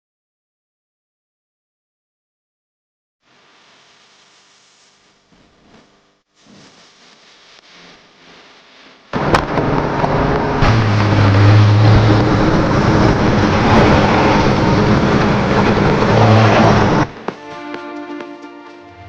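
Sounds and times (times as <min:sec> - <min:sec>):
low motor hum: 0:06.9 - 0:17.3.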